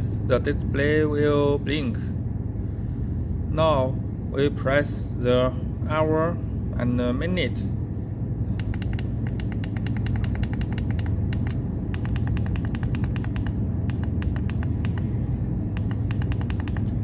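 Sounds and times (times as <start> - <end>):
steady low hum: 0.0 - 17.0
plastic clock buttons clicking: 8.6 - 15.0, 15.8 - 17.0.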